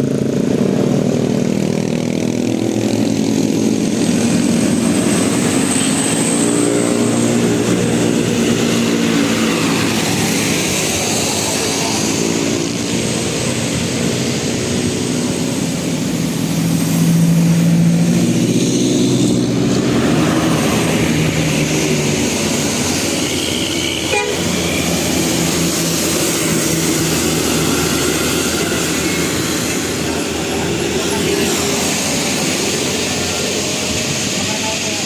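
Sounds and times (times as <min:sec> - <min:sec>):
engine and road noise: 0:00.0 - 0:35.0
bus horn long notes: 0:23.9 - 0:24.9.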